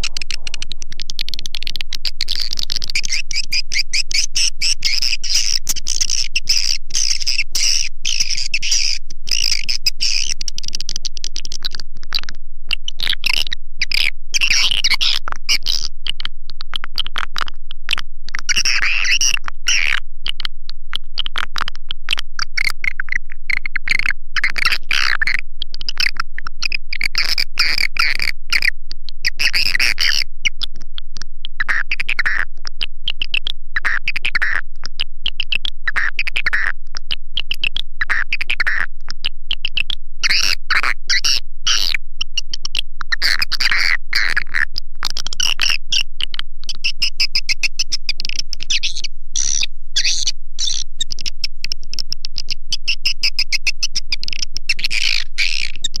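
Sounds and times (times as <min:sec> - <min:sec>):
swiftlets twittering: 0:00.0 - 0:11.6, 0:46.6 - 0:56.0.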